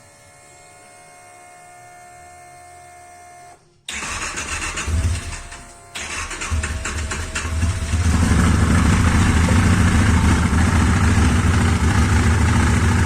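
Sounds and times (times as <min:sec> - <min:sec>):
snowmobile engine revving: 0:03.9 - 0:13.0.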